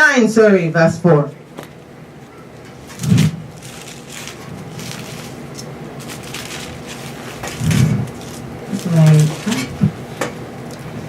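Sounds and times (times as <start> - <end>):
paper pages rustling: 2.7 - 10.0.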